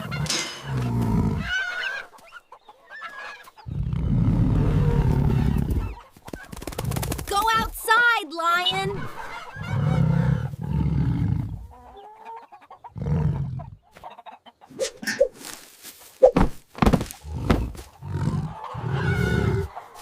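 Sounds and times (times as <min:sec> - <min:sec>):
lion roaring: 0:00.0 - 0:01.6, 0:03.8 - 0:05.8, 0:09.6 - 0:11.6
hens clucking and squawking: 0:00.0 - 0:07.1, 0:08.7 - 0:15.6, 0:17.2 - 0:20.0.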